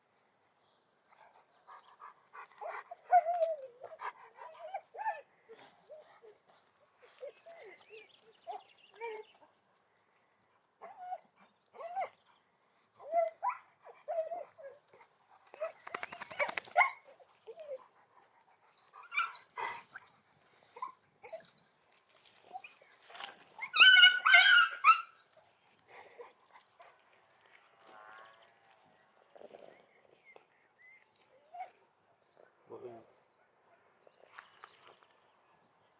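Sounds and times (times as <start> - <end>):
dogs whining and yapping: 1.7 - 9.5, 10.8 - 12.3, 12.9 - 27.0, 30.9 - 33.3.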